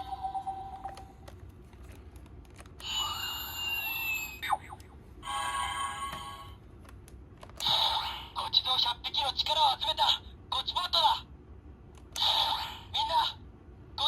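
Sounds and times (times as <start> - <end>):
toy electronic sound effects: 2.8 - 6.4.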